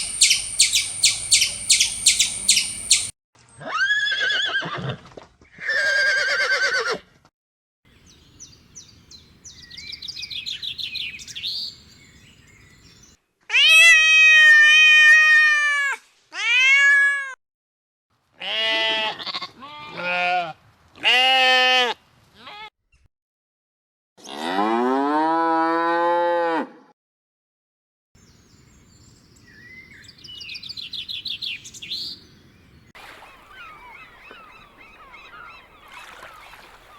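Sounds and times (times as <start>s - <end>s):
faint chirping: 0.0s - 3.1s
goat bleating: 18.4s - 22.7s.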